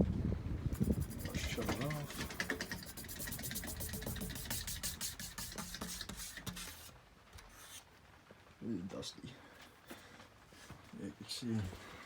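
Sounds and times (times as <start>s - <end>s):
ceiling fan ticking and humming: 0.0s - 7.5s.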